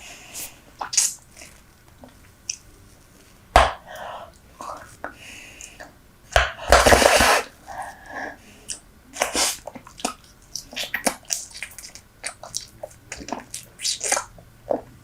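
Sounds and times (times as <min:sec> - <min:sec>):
chewing gum wet smacks: 0:09.6 - 0:15.0.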